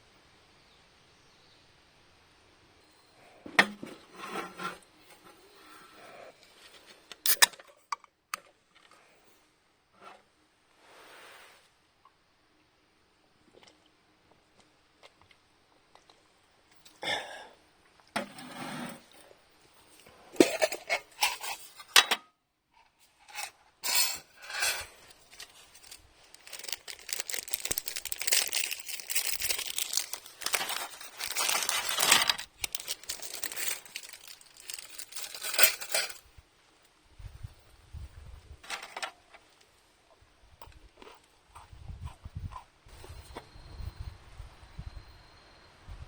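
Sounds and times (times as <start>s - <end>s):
crinkling and rustling: 22.8s - 36.3s, 38.6s - 39.8s.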